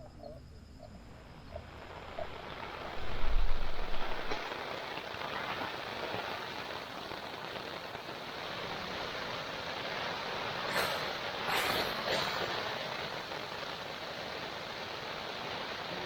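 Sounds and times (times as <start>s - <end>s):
heavy rain falling: 1.8s - 16.0s
deep low rumble: 3.0s - 4.4s.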